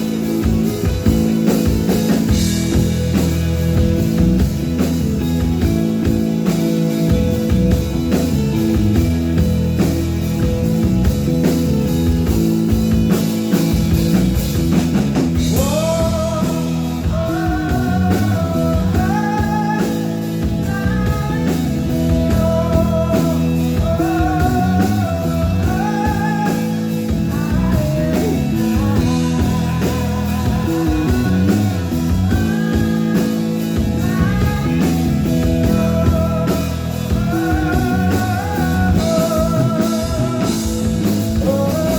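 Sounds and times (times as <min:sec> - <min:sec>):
rock band playing live: 0:00.0 - 0:41.9
person singing: 0:15.4 - 0:41.9.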